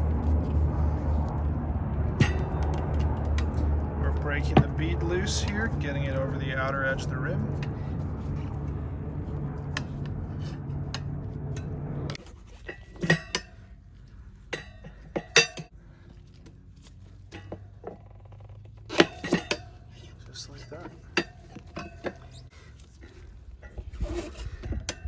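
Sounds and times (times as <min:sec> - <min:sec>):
steady low rumble: 0:00.0 - 0:17.3
tire levers clinking on rim: 0:00.0 - 0:25.0.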